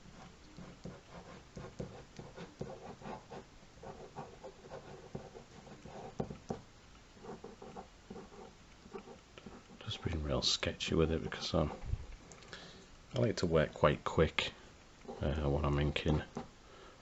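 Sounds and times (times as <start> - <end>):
pen scratching on paper: 0.2 - 6.6, 7.2 - 9.8.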